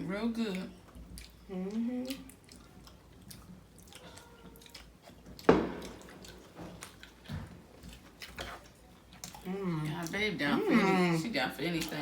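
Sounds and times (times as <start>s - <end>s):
chewing and mouth sounds: 0.3s - 12.0s
sharp knock: 5.5s - 6.7s.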